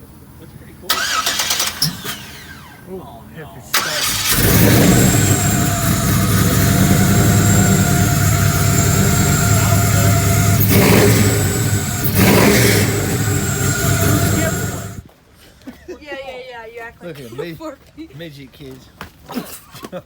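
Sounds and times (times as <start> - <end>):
engine revs: 0.9 - 2.8, 3.8 - 15.0
engine starting and running: 0.9 - 2.9, 3.7 - 15.0.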